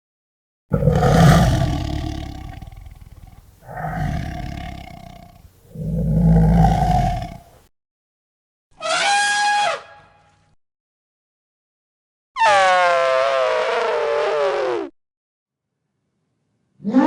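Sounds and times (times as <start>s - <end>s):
large animal roaring: 0.7s - 7.5s.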